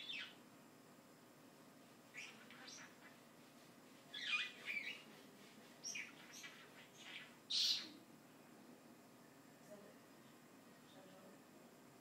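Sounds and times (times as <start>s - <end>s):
pet bird chirping and chattering: 0.0s - 0.4s, 2.1s - 3.2s, 4.1s - 5.0s, 5.8s - 8.0s.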